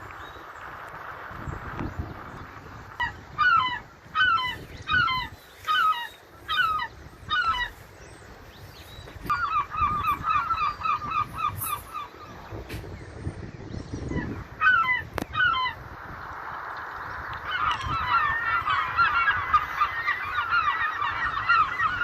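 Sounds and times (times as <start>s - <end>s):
seagulls calling: 1.5s - 22.0s.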